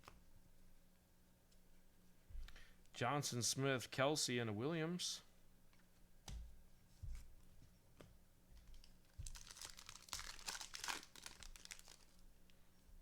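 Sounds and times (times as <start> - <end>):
foil wrapper crinkling: 9.2 - 12.2.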